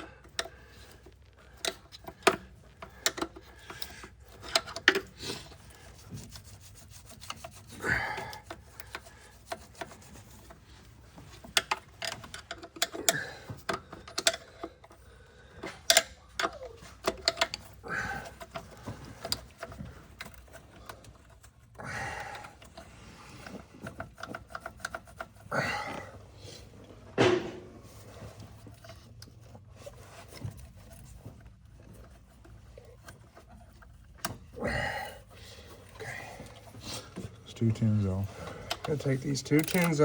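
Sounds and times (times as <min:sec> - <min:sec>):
tools clicking and knocking: 0:00.0 - 0:25.5, 0:27.1 - 0:29.5, 0:38.3 - 0:40.0.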